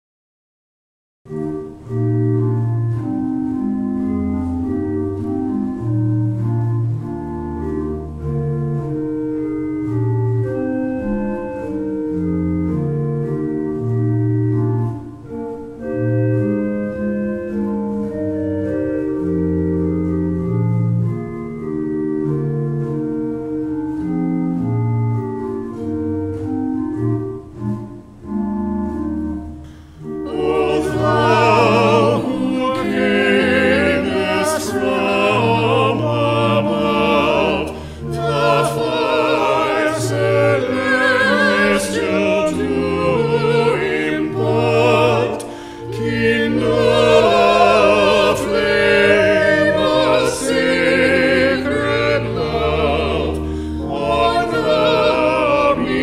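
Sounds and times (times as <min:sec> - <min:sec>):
organ playing slow chords: 0:01.3 - 0:56.0
person singing with vibrato: 0:30.2 - 0:56.0.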